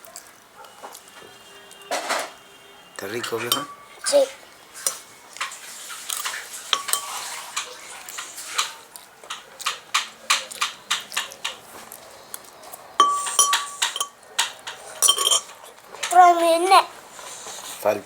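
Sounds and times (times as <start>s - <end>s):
cutlery clinking on a plate: 1.9s - 2.4s, 3.2s - 4.0s, 4.8s - 11.6s, 13.0s - 16.2s.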